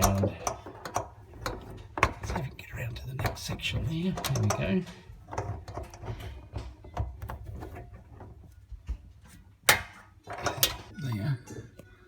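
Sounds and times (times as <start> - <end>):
spanner clinking on metal fittings: 0.0 - 7.9.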